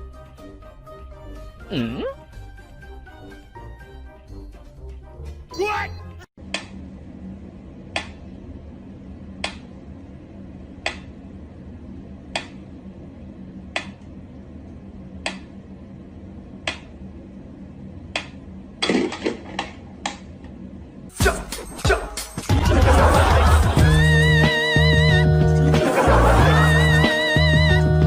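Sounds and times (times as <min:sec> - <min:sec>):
steady low hum: 0:06.4 - 0:21.1.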